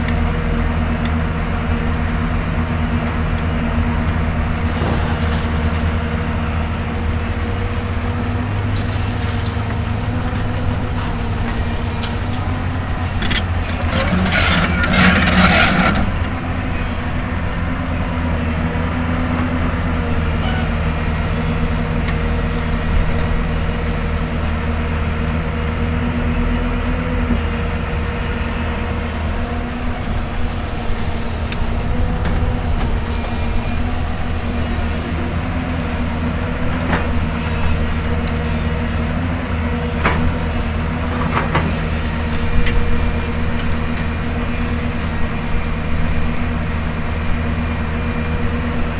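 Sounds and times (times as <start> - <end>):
excavator diesel engine running: 0.0 - 48.9.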